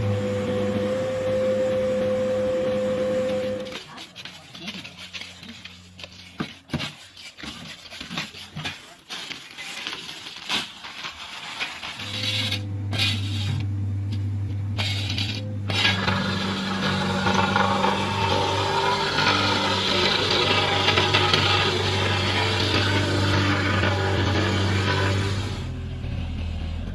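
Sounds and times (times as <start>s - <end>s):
engine running with low hum: 0.0s - 3.7s, 12.0s - 26.9s
metallic clanks and scrapes: 3.5s - 26.9s.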